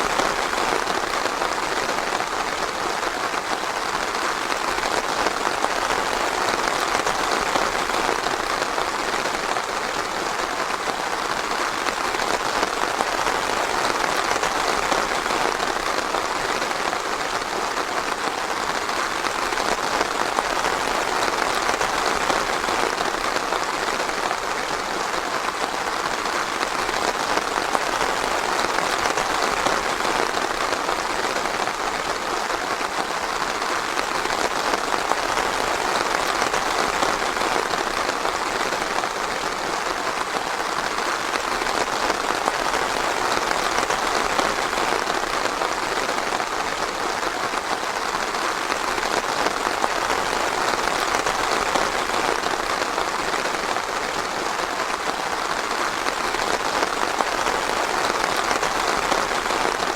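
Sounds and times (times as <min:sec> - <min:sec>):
light rain pattering: 0:00.0 - 0:59.9.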